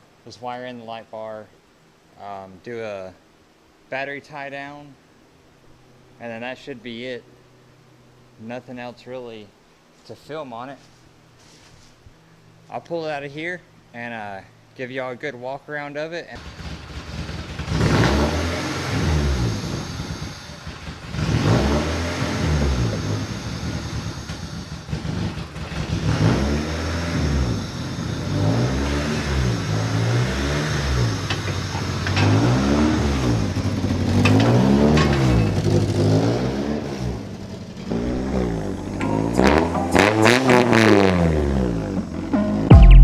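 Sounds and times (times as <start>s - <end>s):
car engine revving: 16.4s - 43.0s.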